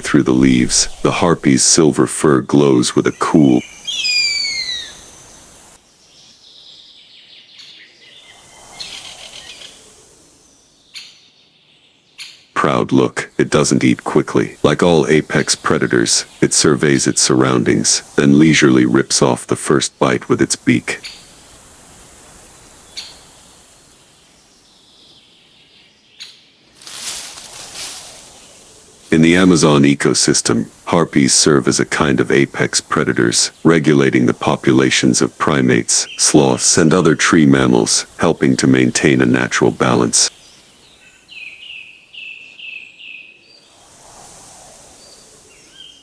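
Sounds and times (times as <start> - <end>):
hissing rustle: 0.0 - 6.4, 8.1 - 10.9, 12.8 - 25.3, 26.7 - 41.4, 43.5 - 46.0
sharp bird calls: 0.0 - 12.6, 20.0 - 21.7, 22.8 - 23.3
distant bird chirps: 0.0 - 21.7, 22.4 - 30.8
rainforest ambience: 0.0 - 46.0
bird whistled cry: 3.7 - 5.0.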